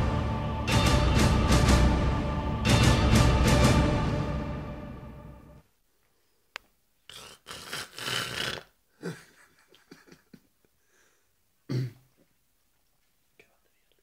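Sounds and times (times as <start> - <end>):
man snoring: 7.1 - 9.2.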